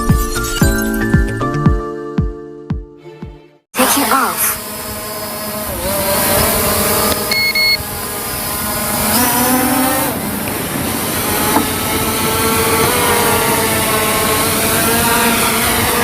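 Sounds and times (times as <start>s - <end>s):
drone propellers buzzing: 3.8s - 16.0s
short double beep: 7.3s - 7.8s.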